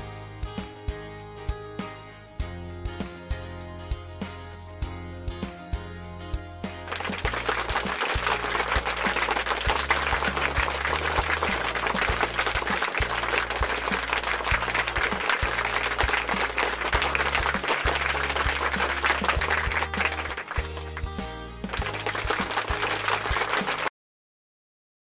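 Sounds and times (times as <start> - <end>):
background music with bass line: 0.0 - 23.9
dense applause: 6.9 - 23.9.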